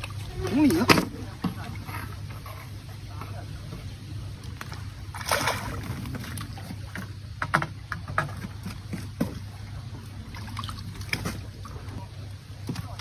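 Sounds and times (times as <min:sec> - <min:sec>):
water splash: 0:05.1 - 0:06.7.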